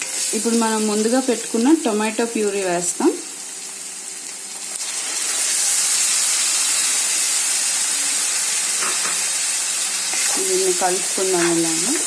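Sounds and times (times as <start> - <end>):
puree sizzling in hot oil: 0.0 - 12.0.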